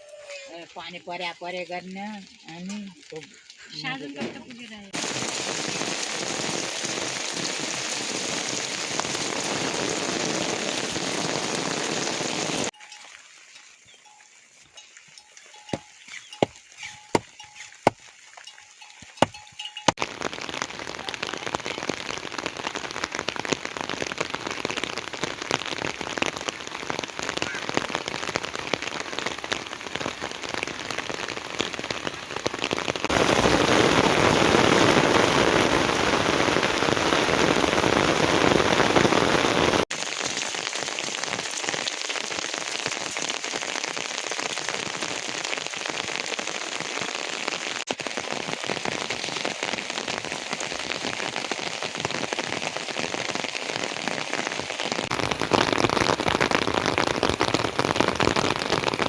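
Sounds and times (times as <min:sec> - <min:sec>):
heavy rain hissing: 0:04.9 - 0:12.7, 0:19.9 - 0:59.0
sharp drips: 0:12.7 - 0:33.6.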